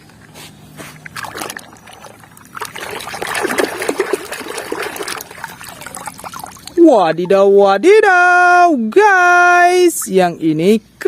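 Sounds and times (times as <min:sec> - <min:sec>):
water trickling and splashing: 0:00.0 - 0:07.8.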